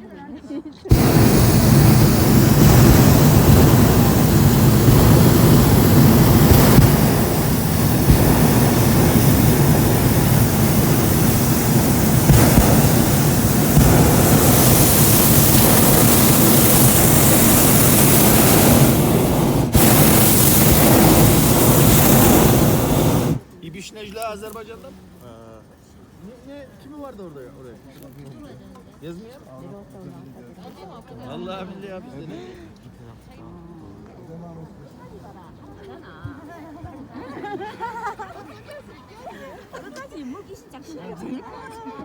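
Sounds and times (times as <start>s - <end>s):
low rumble: 0.9s - 23.4s
propane burner roaring: 0.9s - 23.4s.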